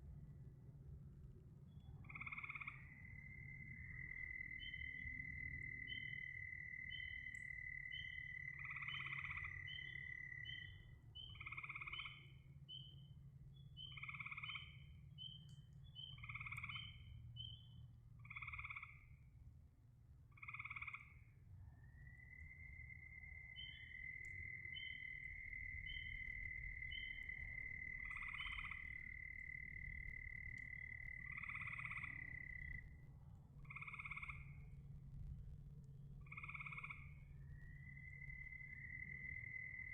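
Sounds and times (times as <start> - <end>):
low steady rumble: 0.0 - 2.4, 25.2 - 39.9
loud frog croak: 2.0 - 12.4, 13.8 - 14.9, 16.1 - 17.1, 18.2 - 19.1, 20.3 - 21.3, 22.1 - 33.0, 33.6 - 34.8, 36.2 - 39.9
short frog chirps: 2.0 - 12.9, 13.8 - 19.0, 20.4 - 21.3, 22.1 - 32.8, 33.6 - 34.6, 36.3 - 37.2
frogs trilling: 2.0 - 13.0, 13.6 - 19.3, 20.3 - 21.3, 21.9 - 33.0, 33.6 - 34.8, 36.2 - 39.9.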